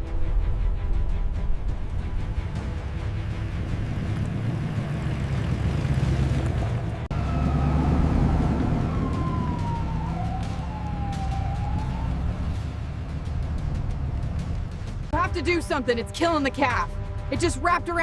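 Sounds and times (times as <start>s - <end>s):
low rumble: 0.0s - 17.4s
police siren wailing: 7.0s - 14.2s.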